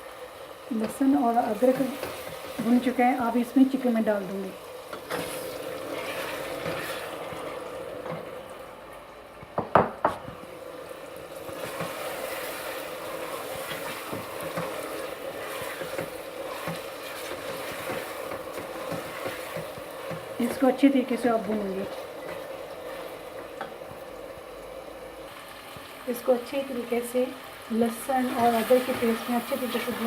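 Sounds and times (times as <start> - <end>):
chicken sizzling in hot oil: 0.0 - 30.0.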